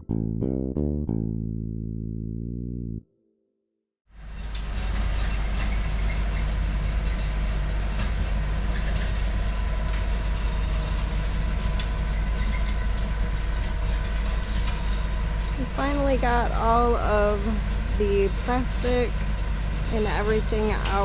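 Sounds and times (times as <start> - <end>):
rototiller engine running: 4.2 - 21.0.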